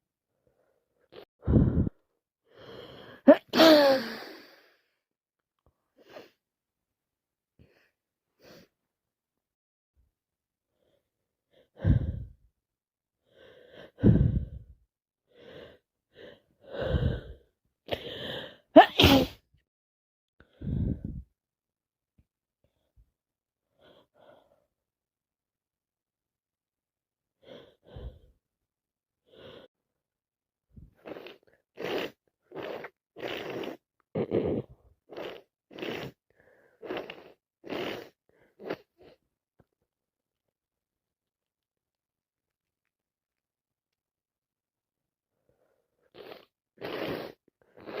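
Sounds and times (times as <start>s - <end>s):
woman breathing hard: 1.4s - 4.9s, 11.6s - 12.4s, 13.3s - 14.8s, 15.4s - 18.7s, 20.5s - 21.2s
woman sneezing: 3.3s - 4.3s, 18.8s - 19.4s.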